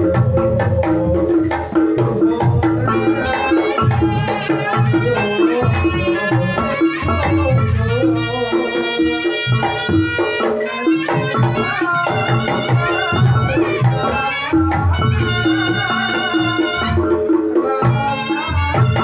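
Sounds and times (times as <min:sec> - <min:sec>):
hand drums: 0:00.0 - 0:19.0
reedy shawm melody: 0:00.0 - 0:19.0.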